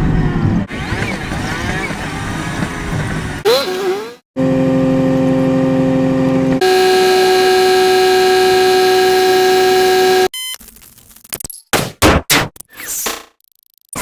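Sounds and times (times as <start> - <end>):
synthetic horn-like buzzing tone: 6.6 - 10.3.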